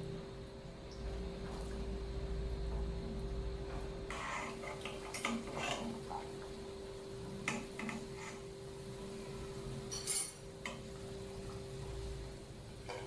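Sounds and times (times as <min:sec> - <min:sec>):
kitchen utensils and dishes clinking: 0:09.9 - 0:10.8.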